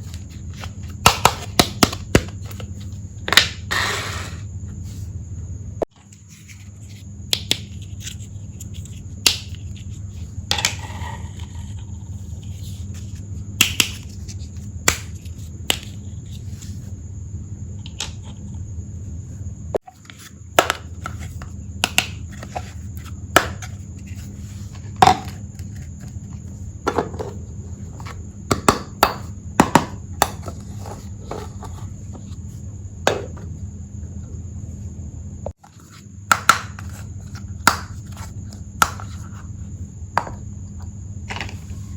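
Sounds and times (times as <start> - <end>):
low hum: 29.3 - 36.0.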